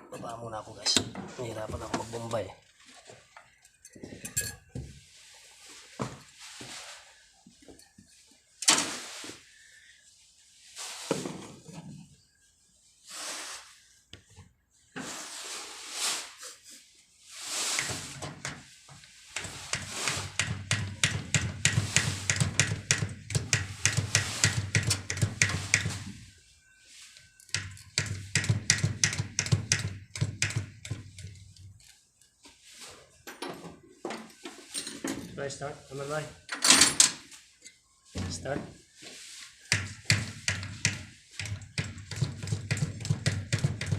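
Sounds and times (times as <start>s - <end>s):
knocks and handling noises: 0.8s - 6.8s, 27.2s - 35.4s.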